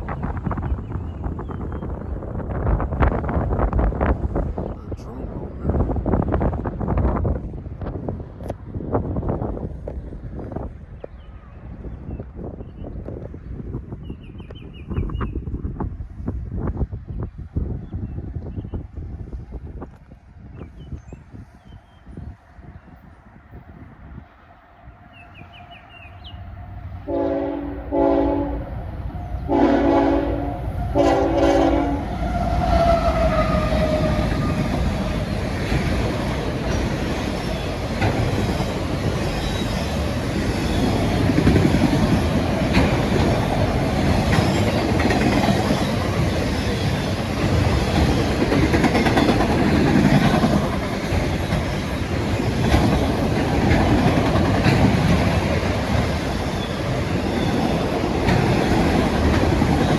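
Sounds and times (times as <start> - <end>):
train wheels on rails: 25.1 - 59.9
locomotive air horn blasts: 27.1 - 28.8, 29.4 - 33.2.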